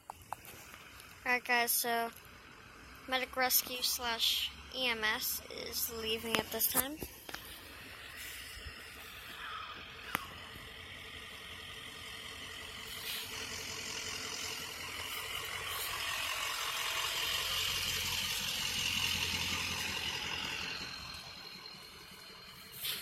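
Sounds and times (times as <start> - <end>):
vehicle driving past: 4.0 - 6.6, 7.2 - 23.0.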